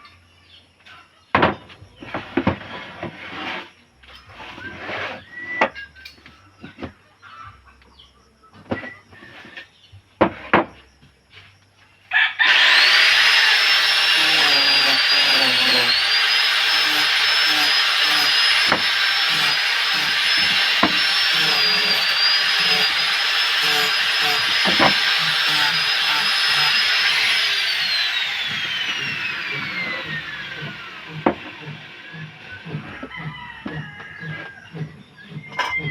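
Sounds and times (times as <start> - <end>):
electric power tool whining: 12.4 - 35.9.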